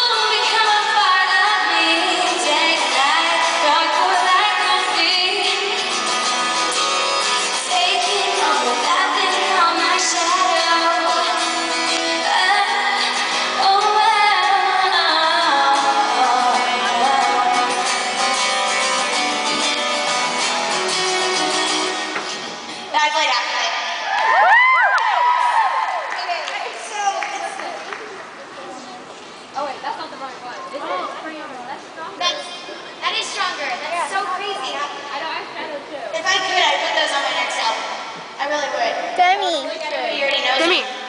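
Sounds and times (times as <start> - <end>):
woman singing: 0.0 - 6.0, 7.5 - 18.0
guitar accompaniment: 0.0 - 22.9.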